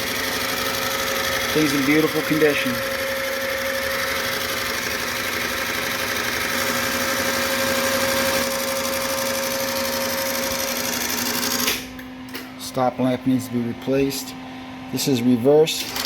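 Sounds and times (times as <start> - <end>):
fast mechanical rattle: 0.0 - 11.8, 15.8 - 16.0
projector motor hum: 0.0 - 16.0.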